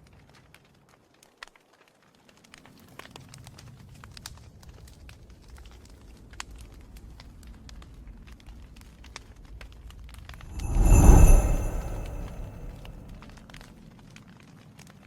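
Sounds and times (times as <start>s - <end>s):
low rumble: 10.4s - 13.7s.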